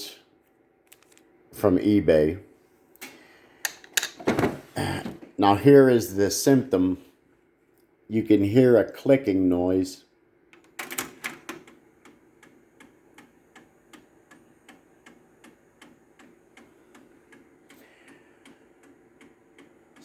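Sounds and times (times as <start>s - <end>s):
cassette mechanism rapid clicking: 10.6s - 20.0s
faint motor hum: 11.6s - 20.0s.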